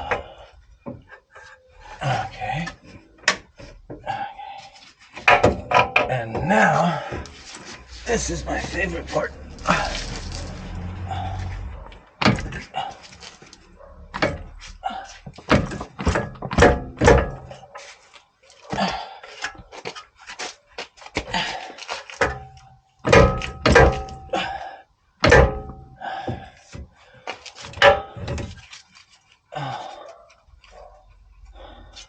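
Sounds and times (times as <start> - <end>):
heavy metal thunks: 5.2 - 7.4, 9.6 - 12.9, 14.1 - 14.6, 15.2 - 17.6, 22.2 - 24.4, 25.2 - 26.9, 27.7 - 28.6.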